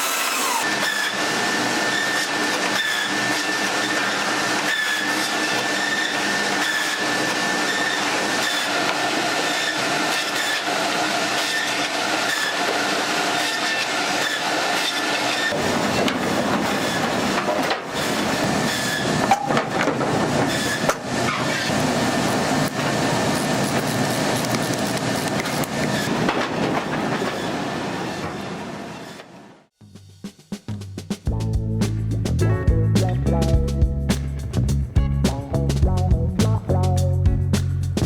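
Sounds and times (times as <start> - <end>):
woodworking machinery whining: 0.0 - 28.3.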